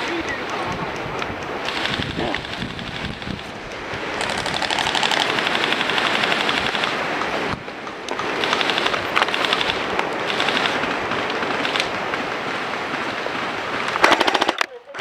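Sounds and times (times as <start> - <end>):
toy gun firing rapidly: 1.6 - 3.4, 4.2 - 7.0, 8.2 - 10.9, 14.0 - 14.8.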